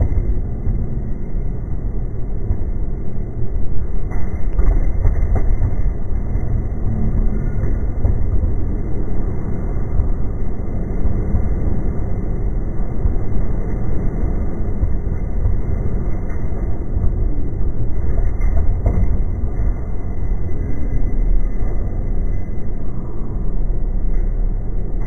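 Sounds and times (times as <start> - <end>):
train rumble inside carriage: 0.0 - 25.0.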